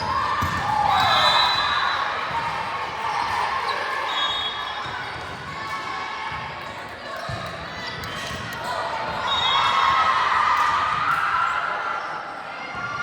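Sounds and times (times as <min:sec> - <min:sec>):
ball bouncing on court: 0:00.0 - 0:03.7, 0:04.8 - 0:09.2.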